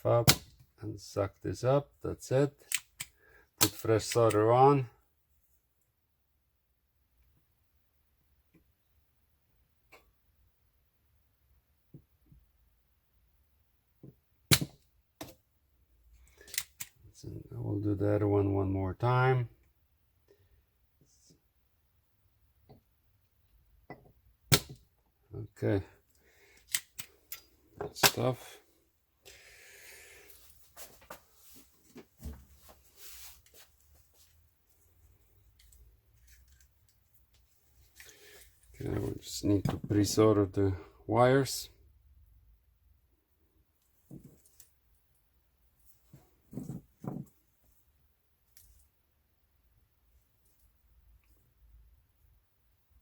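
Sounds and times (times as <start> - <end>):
tools clicking and snapping: 2.6 - 4.4, 16.3 - 17.0, 26.6 - 28.2.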